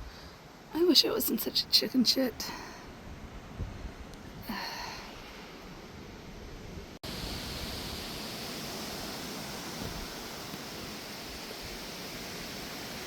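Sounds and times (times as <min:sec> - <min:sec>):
wind rushing hiss: 0:02.8 - 0:13.0.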